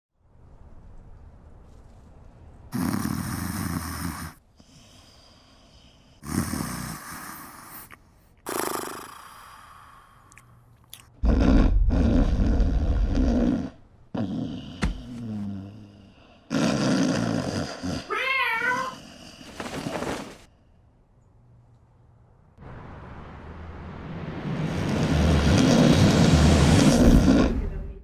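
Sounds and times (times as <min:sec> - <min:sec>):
man snoring heavily: 0:02.7 - 0:07.7, 0:08.4 - 0:10.1, 0:11.2 - 0:18.1.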